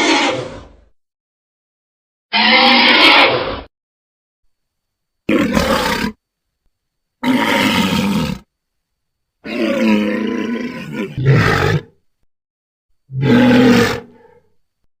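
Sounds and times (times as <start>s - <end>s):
dragon roaring: 2.3s - 3.7s, 5.3s - 6.2s, 7.2s - 8.4s, 9.4s - 11.9s, 13.1s - 14.4s.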